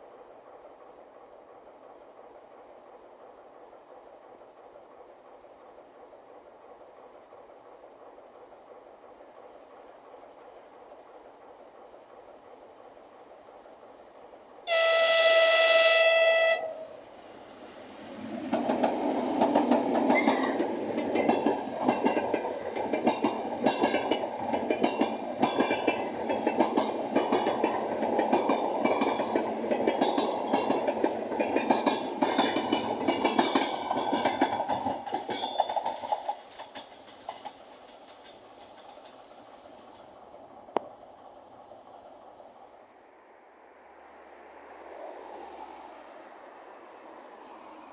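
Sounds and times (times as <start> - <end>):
locomotive horn blast: 14.7 - 17.0
train wheels clattering: 18.2 - 42.3.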